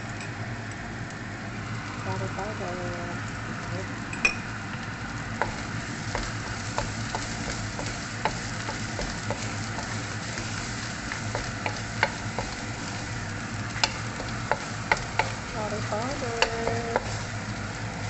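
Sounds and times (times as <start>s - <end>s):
spices sizzling in hot oil: 0.0s - 18.0s
utensil clicking against pan: 11.1s - 12.7s, 13.7s - 15.5s, 16.3s - 17.2s.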